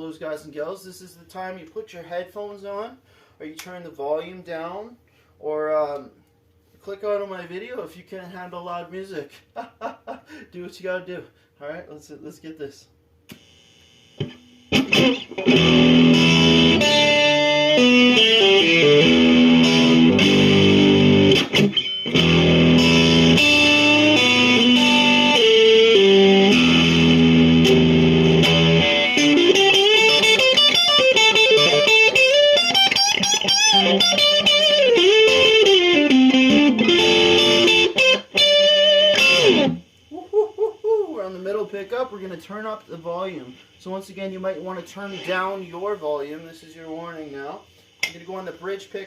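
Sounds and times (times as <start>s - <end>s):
loud electric guitar: 14.2s - 39.8s.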